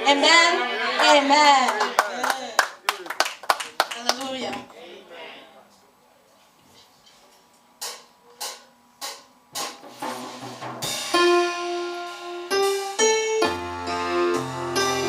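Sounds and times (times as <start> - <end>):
sustained piano chords: 10.8 - 15.0.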